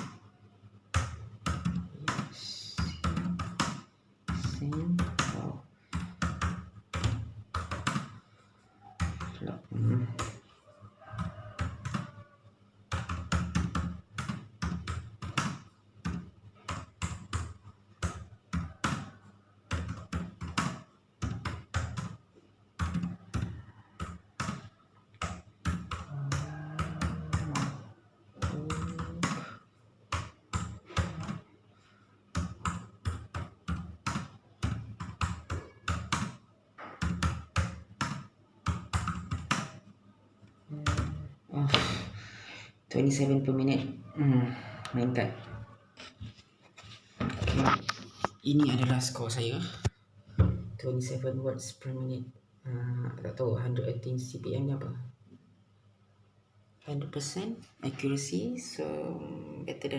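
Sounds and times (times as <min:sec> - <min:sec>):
computer keyboard keys clicking: 0:12.9 - 0:22.2, 0:22.8 - 0:31.5, 0:32.3 - 0:39.8.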